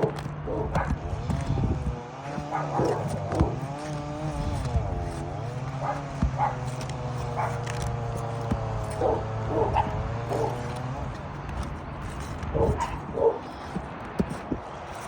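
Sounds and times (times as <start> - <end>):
crowbar knocking on shingles: 0.0 - 15.0
dog yipping: 2.4 - 3.6, 5.1 - 7.8, 8.8 - 10.8, 12.5 - 13.6.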